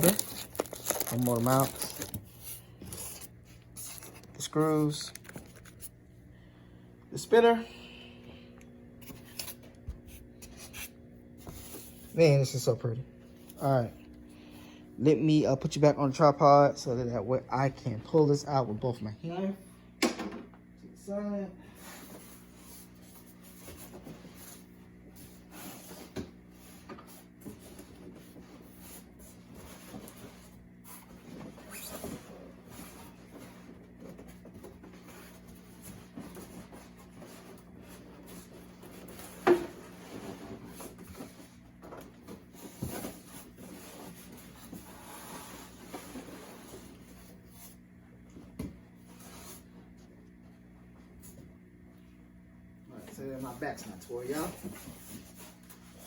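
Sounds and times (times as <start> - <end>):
cardboard packaging scraping: 0.0 - 5.9, 42.4 - 47.6
faint steady hum: 0.0 - 56.0.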